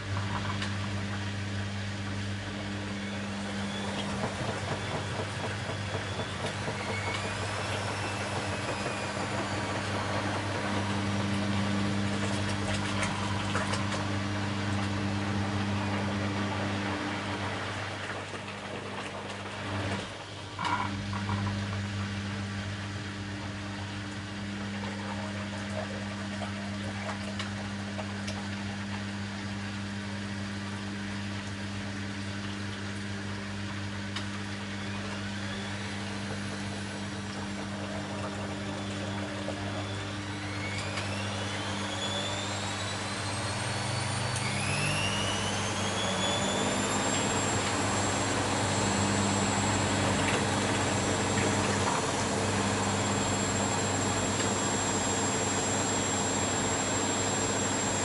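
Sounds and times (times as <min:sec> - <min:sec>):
motor whine rising in pitch: 0:00.0 - 0:58.0
washing machine running: 0:00.0 - 0:58.0
washing machine knock: 0:03.3 - 0:14.2.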